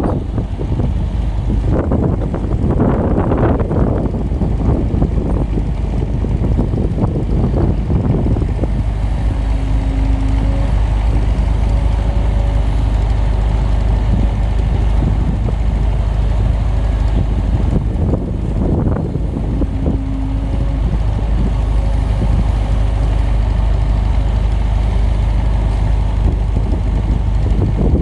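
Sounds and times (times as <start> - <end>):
diesel engine running: 0.0 - 28.0
wind buffeting microphone: 0.0 - 28.0.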